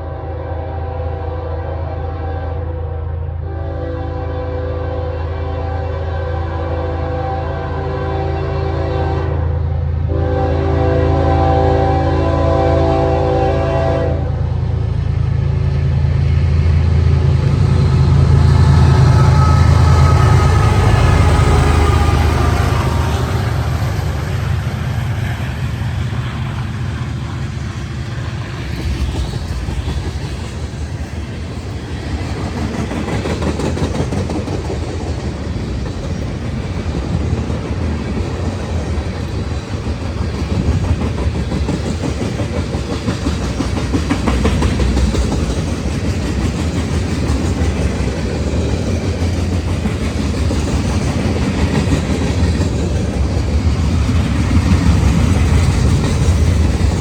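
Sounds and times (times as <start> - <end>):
freight train cars rumbling: 0.0 - 57.0
train wheels clacking on rails: 16.6 - 57.0.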